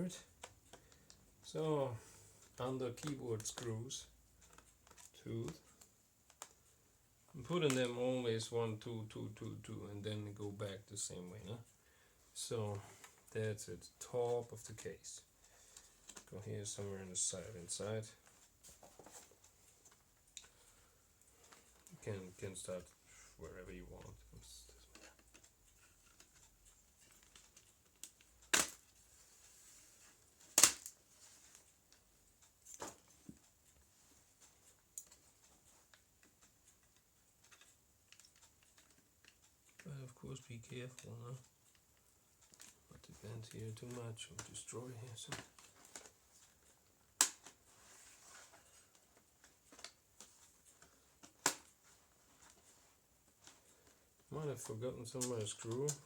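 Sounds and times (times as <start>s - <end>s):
plastic clips snapping: 27.0s - 28.9s, 30.5s - 31.0s, 47.2s - 47.6s, 51.2s - 51.8s
plastic laptop case clicks: 30.6s - 30.9s.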